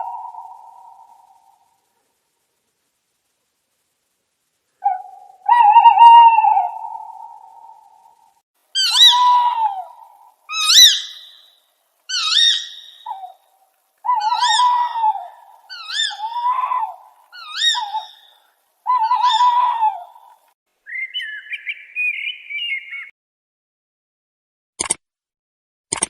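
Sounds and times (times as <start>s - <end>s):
bird whistled call: 0.0s - 1.4s, 4.9s - 7.9s, 8.8s - 9.9s, 10.5s - 11.5s, 12.1s - 13.4s, 14.1s - 18.3s, 18.9s - 20.0s, 20.9s - 23.1s
high fluttering bird call: 4.8s - 7.7s, 8.8s - 11.5s, 12.1s - 13.4s, 14.0s - 18.3s, 18.9s - 20.3s, 20.9s - 23.1s.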